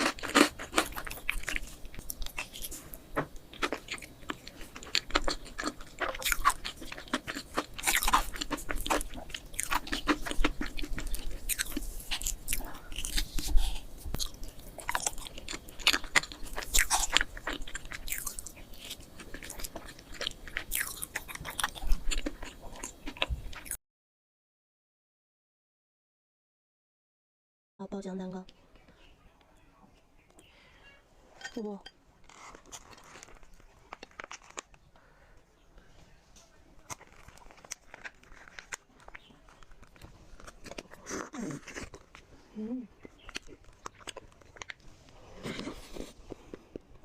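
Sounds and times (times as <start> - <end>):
person chewing and biting food: 0.0 - 23.8, 32.2 - 34.8, 36.8 - 47.0
wet mouth clicks and crunches: 43.0 - 46.9.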